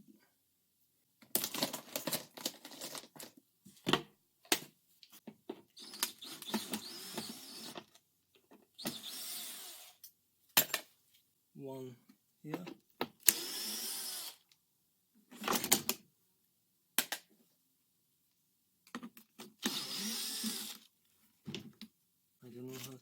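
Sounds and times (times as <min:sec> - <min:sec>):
rasping whirring screwdriver: 0:05.8 - 0:07.8, 0:08.8 - 0:10.0, 0:13.2 - 0:14.4, 0:19.6 - 0:20.9.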